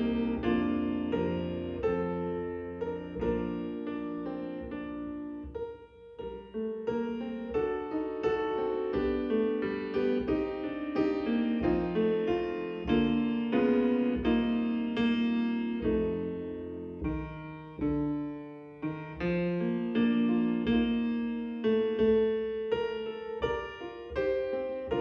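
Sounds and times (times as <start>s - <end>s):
piano playing slow chords: 0.0s - 25.0s.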